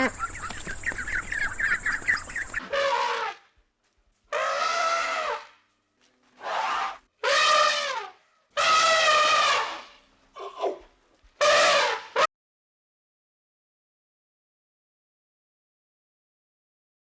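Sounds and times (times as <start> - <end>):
farm animal bleating: 0.0 - 2.5.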